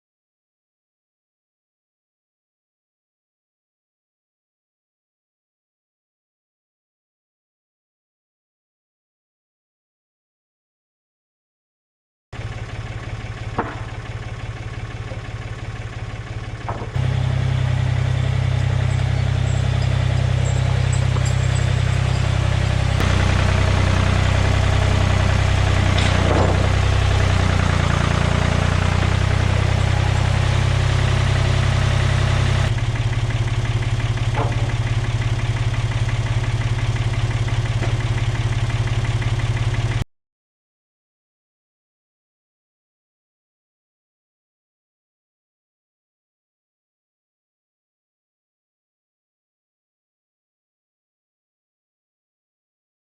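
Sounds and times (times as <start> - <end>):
sawmill gasoline engine running: 12.4 - 40.0.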